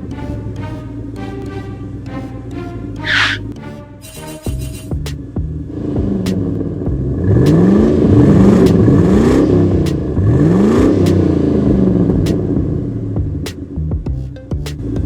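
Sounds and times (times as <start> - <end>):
cartoon engine revving: 3.0 - 3.5.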